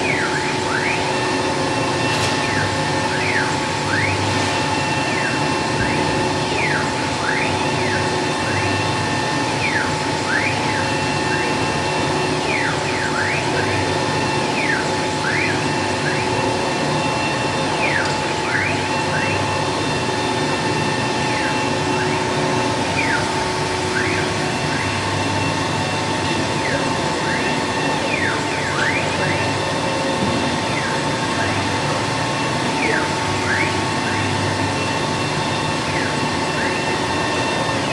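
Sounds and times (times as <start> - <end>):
axis motors whining: 0.0 - 37.9
router spindle whine: 0.0 - 37.9.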